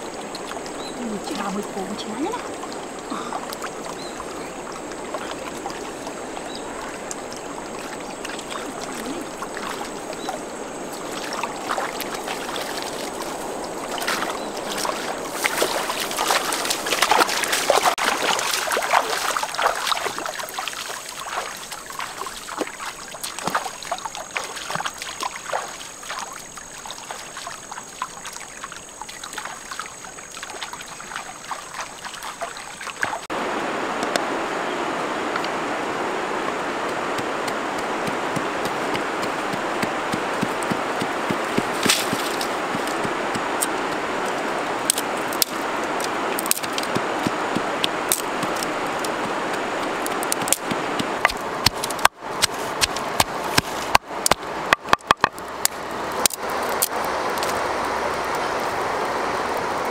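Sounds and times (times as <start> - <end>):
water trickling and splashing: 0.0 - 59.9
small knocks: 50.2 - 55.4.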